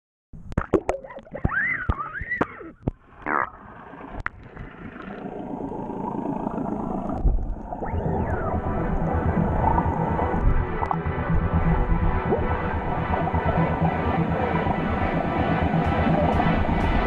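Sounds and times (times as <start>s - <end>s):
steady underwater rushing: 2.9s - 17.0s
underwater sharp clicks: 9.8s - 11.0s.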